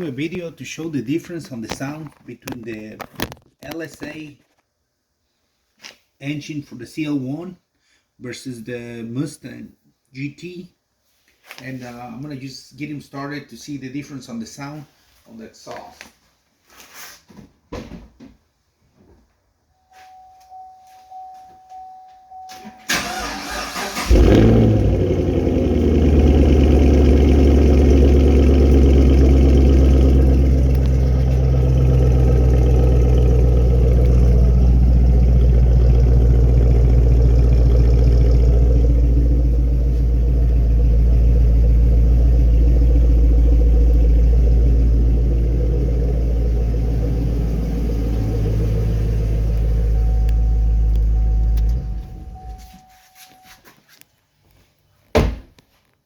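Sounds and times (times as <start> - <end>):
faint steady tone: 19.7 - 22.9, 47.8 - 53.8
car engine starting and idling: 22.5 - 52.9.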